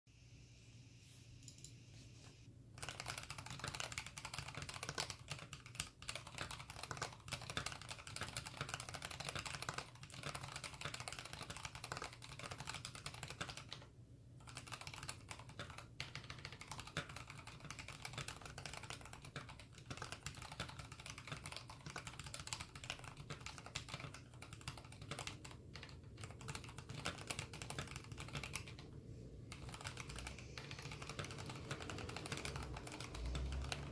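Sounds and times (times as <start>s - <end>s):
fast mechanical keyboard typing: 2.8s - 33.9s.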